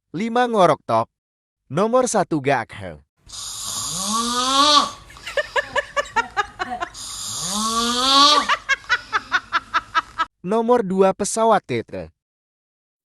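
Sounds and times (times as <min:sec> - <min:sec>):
person snoring: 0:03.3 - 0:10.3.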